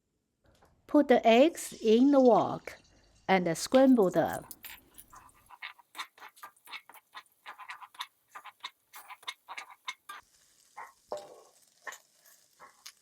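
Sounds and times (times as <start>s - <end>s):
spatula scraping a wok: 3.8s - 13.0s.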